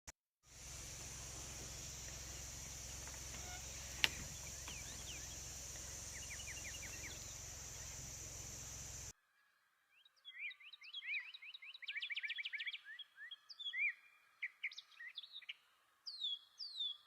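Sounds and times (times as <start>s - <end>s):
bird chirping: 0.5s - 9.1s, 9.9s - 17.0s
steady high-pitched hiss: 0.5s - 9.1s.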